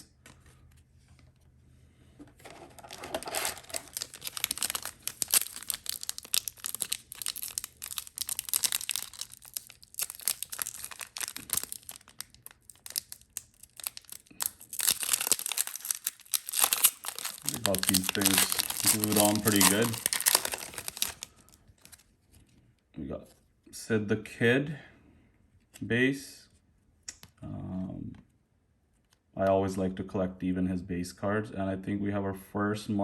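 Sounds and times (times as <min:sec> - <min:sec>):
wrapper crinkling and tearing: 0:02.4 - 0:22.1.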